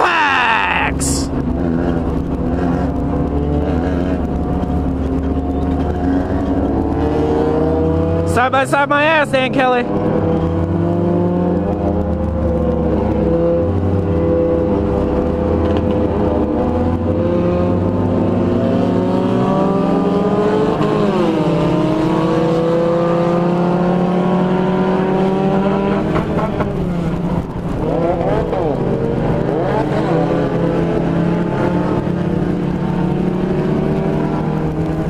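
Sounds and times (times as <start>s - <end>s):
car engine revving: 0.9s - 35.0s.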